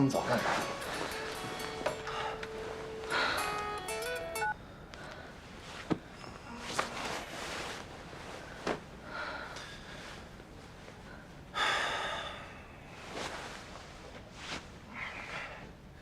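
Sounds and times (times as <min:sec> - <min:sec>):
small movement sounds: 0:00.0 - 0:11.1
soft breathing: 0:00.7 - 0:03.8, 0:04.6 - 0:16.0.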